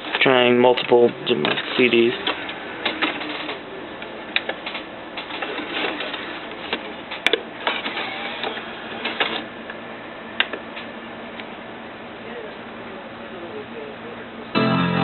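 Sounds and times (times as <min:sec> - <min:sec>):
cd drive mechanism whirring: 0:00.8 - 0:11.5.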